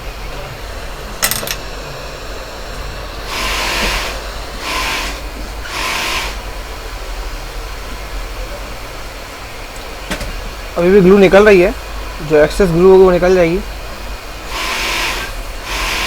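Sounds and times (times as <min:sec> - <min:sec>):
hot air station humming: 0:00.0 - 0:16.0
short bursts of hissing air: 0:02.4 - 0:06.4.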